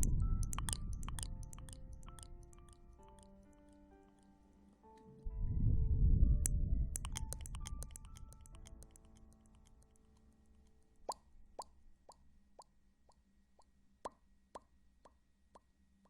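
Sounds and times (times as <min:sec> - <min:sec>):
low rumble: 0:00.0 - 0:03.0, 0:05.3 - 0:08.9
echoing water-drop plops: 0:00.0 - 0:03.3, 0:06.9 - 0:09.8
small clicks: 0:00.0 - 0:04.3, 0:07.0 - 0:10.3.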